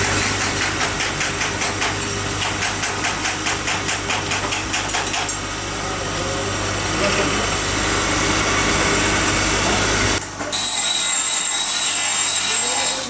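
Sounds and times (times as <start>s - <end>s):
machine knocking rhythmically: 0.0s - 5.4s
machine motor hum: 5.4s - 10.2s.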